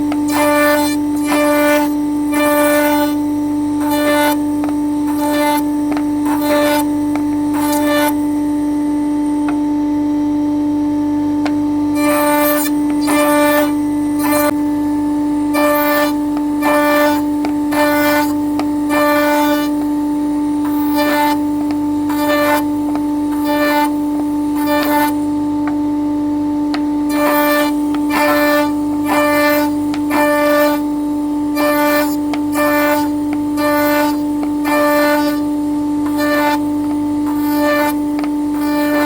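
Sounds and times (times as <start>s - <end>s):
bursts of wood cutting noise: 0.0s - 8.2s, 12.0s - 14.6s, 15.5s - 19.9s, 20.6s - 25.2s, 27.0s - 30.9s, 31.5s - 39.0s
woodworking machine humming: 0.0s - 39.0s.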